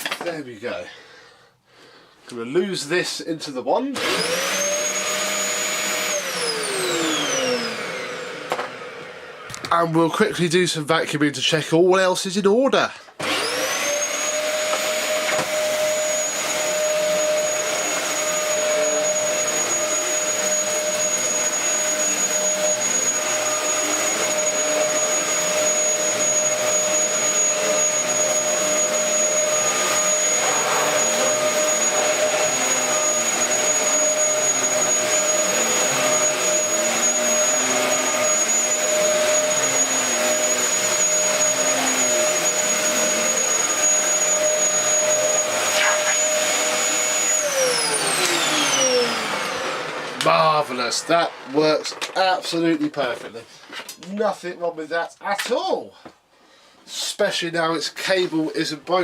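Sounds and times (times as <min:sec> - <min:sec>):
vacuum cleaner running: 0:03.7 - 0:10.5, 0:13.2 - 0:53.4.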